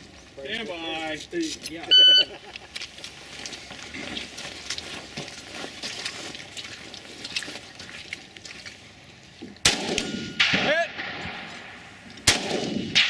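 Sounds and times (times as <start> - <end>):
rifle shot: 9.6 - 13.0
steel target ringing: 9.9 - 11.5.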